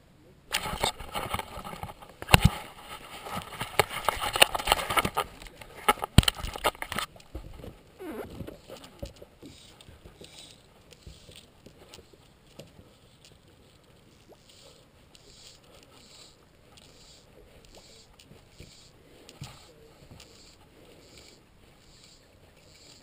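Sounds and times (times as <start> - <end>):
camera handling noise: 0.5 - 13.9.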